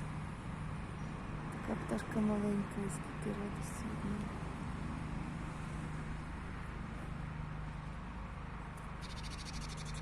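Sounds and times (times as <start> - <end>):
distant traffic hum: 0.0 - 10.0
small bird chattering call: 9.0 - 10.0.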